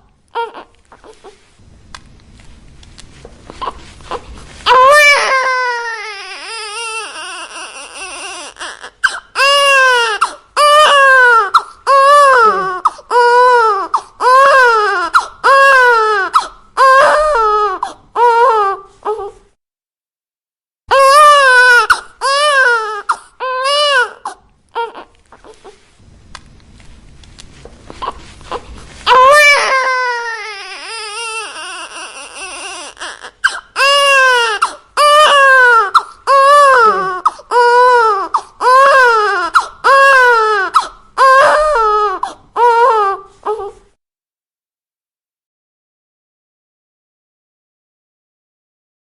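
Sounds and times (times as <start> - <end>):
newborn baby crying: 0.3 - 1.4, 3.5 - 19.5, 20.9 - 25.9, 27.9 - 43.9.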